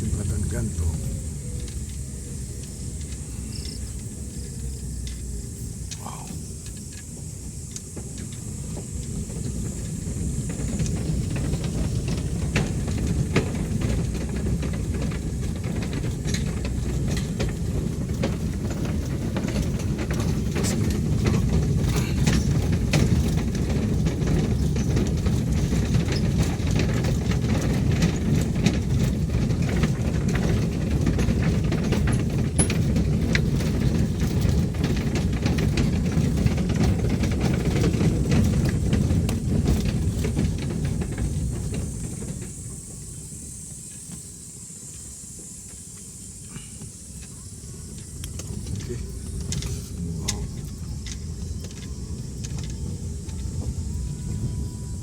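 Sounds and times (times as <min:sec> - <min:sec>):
tyres rumbling on bridge deck: 0:00.0 - 0:55.0
clatter of knocks and clicks: 0:07.7 - 0:42.6.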